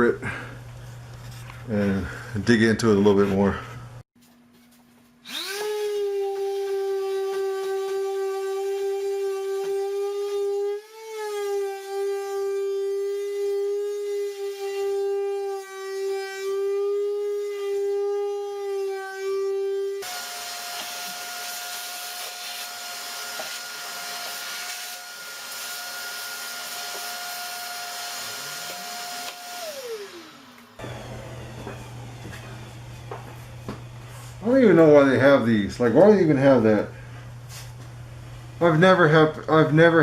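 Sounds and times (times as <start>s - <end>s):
electric sander on wood: 5.2s - 34.9s.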